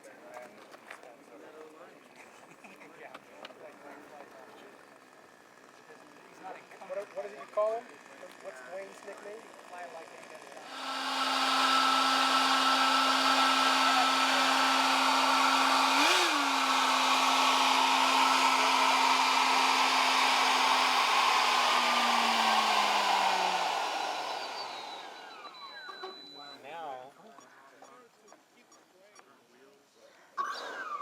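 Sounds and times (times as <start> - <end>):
model jet engine whine: 4.5 - 26.6.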